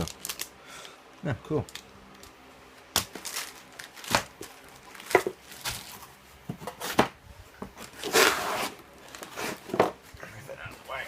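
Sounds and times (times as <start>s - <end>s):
packaging rustling scrape: 7.8s - 10.0s.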